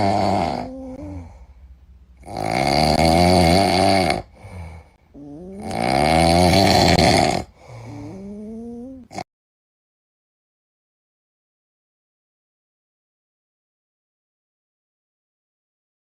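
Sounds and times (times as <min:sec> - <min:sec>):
cat snoring: 0:00.0 - 0:01.4, 0:02.2 - 0:09.2
cat breathing: 0:07.5 - 0:09.0.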